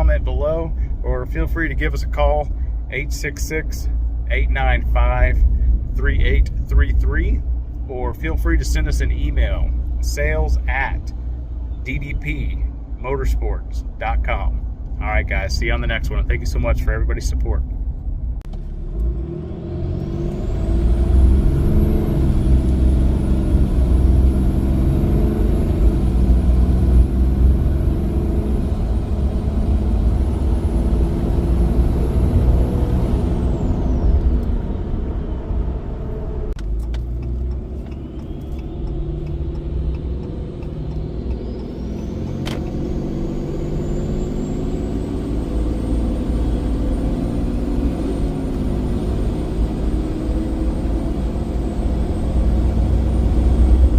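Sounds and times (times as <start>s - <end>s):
diesel engine drone: 0.0s - 53.9s
turbocharger whistling: 18.7s - 53.9s.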